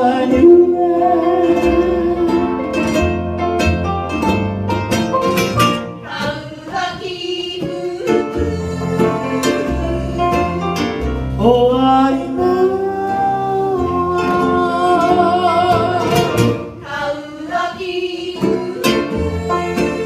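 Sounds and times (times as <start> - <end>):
plucked string accompaniment: 0.0 - 20.0
person singing long gliding notes: 11.4 - 16.4.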